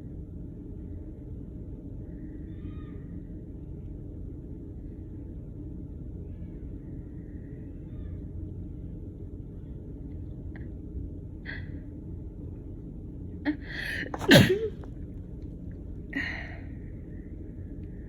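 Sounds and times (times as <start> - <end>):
low background rumble: 0.0 - 18.0
woman sneezing: 13.5 - 14.8
catching breaths: 13.5 - 14.9, 16.0 - 18.0
breath out: 13.7 - 14.8.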